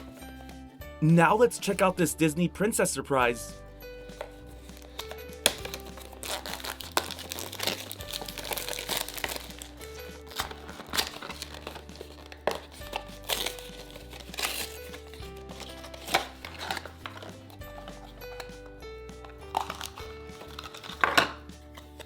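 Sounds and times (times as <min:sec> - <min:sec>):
light background music: 0:00.0 - 0:22.0
plastic packaging crinkling: 0:04.2 - 0:18.5, 0:19.2 - 0:22.0.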